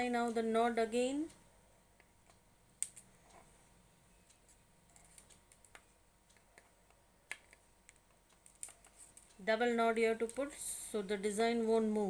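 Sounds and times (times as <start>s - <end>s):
string and paper handling clicks: 4.3s - 9.4s.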